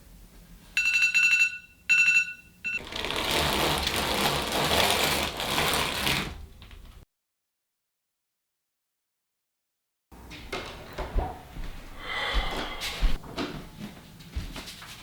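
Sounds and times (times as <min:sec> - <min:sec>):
rough mechanical noise: 0:02.8 - 0:07.0.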